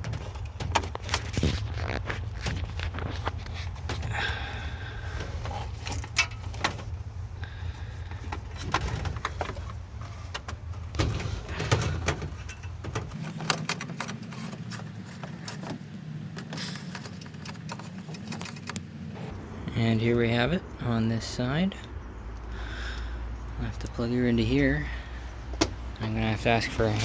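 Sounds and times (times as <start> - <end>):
cable clicks knocks and scrapes: 0.0 - 4.3, 8.0 - 19.3, 25.5 - 27.0
low background hum: 0.0 - 27.0.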